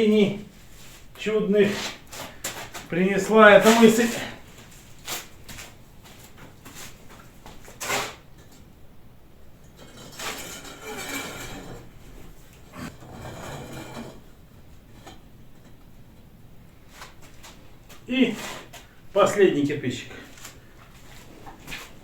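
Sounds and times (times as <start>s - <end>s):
gritty scraping of mortared bricks: 9.8s - 15.3s.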